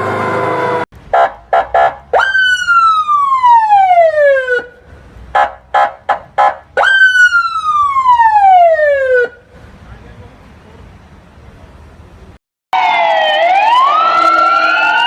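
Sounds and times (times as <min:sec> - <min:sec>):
emergency vehicle siren: 0:00.0 - 0:09.5, 0:12.7 - 0:15.0
multi-tone siren: 0:02.1 - 0:04.7, 0:06.8 - 0:09.4, 0:12.7 - 0:15.0.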